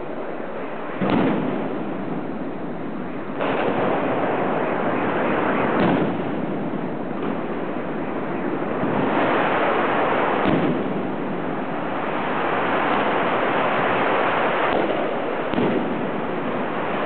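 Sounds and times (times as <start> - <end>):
firework explosions: 0.0 - 17.0
loud firework bursts: 0.0 - 17.0.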